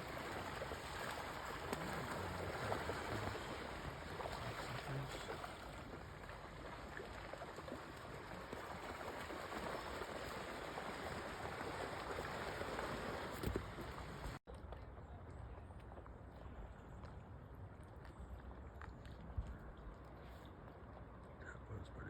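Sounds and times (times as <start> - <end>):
river water rushing: 0.0 - 7.5, 8.2 - 14.4.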